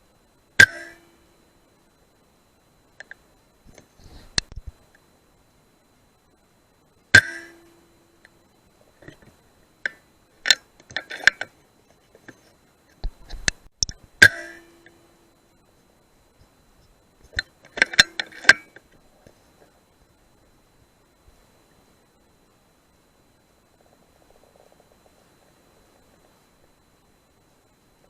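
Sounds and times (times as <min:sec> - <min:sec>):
short ringing tone: 0:00.6 - 0:01.3, 0:14.2 - 0:15.3
sharp clicks and clinks: 0:17.3 - 0:18.9.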